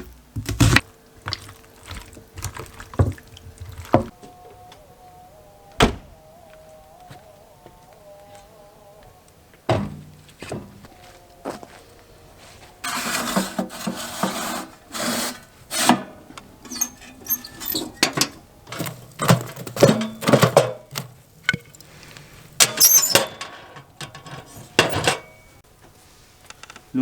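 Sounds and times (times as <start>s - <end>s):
objects knocking and clattering: 0.0s - 4.1s, 15.9s - 25.6s.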